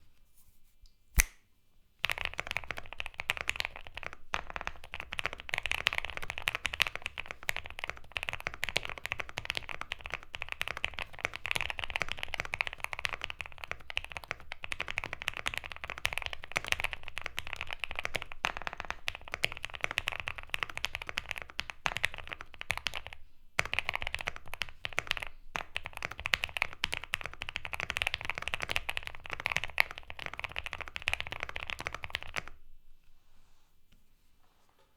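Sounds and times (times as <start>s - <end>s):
sharp click: 1.2s - 1.4s
fast mechanical keyboard typing: 2.0s - 32.5s.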